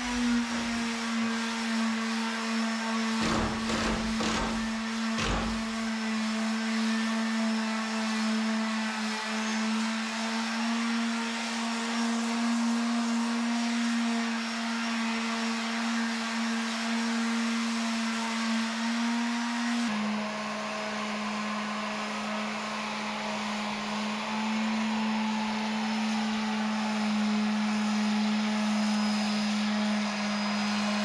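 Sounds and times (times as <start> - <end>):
motor humming: 3.2 - 6.0.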